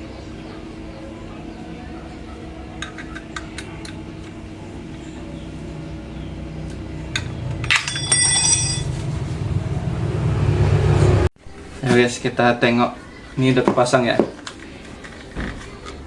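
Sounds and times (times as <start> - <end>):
low rumble: 3.7 - 11.8
small metal parts clicking: 7.1 - 8.9
sharp metallic clink: 7.6 - 9.1.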